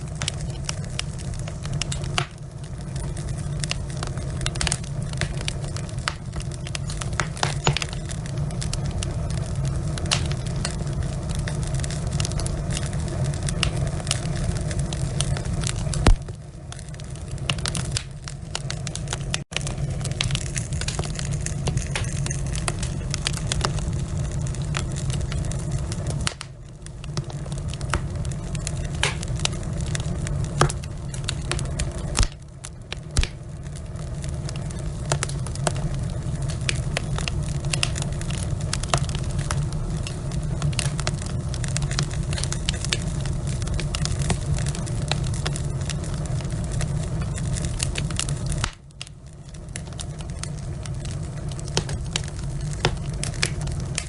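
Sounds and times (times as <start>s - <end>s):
logs crackling and popping in fire: 0.0s - 54.0s
low rush of flames: 0.0s - 54.0s.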